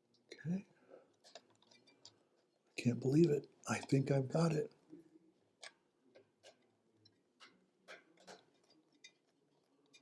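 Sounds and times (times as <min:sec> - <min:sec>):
small parts clicking and tapping: 0:01.1 - 0:04.1, 0:05.6 - 0:10.0.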